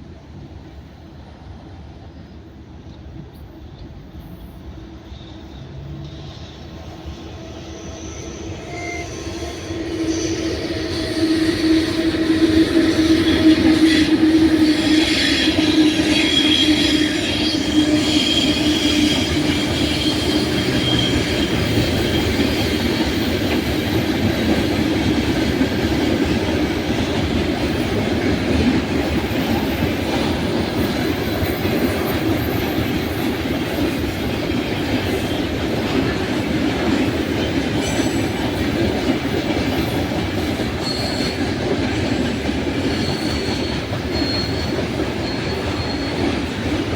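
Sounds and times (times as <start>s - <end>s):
train wheels rumbling on rails: 0.0s - 46.9s
high squeal of wheels: 5.1s - 25.8s, 29.2s - 34.4s, 39.8s - 46.9s.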